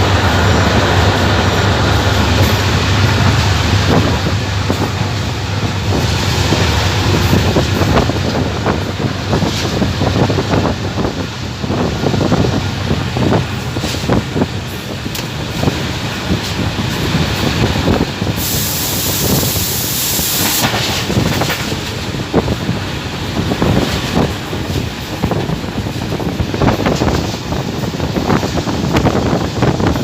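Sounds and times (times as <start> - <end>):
train rumble: 0.0 - 30.0
train wheels clattering over rails: 0.0 - 30.0
sharp hiss: 18.2 - 21.0.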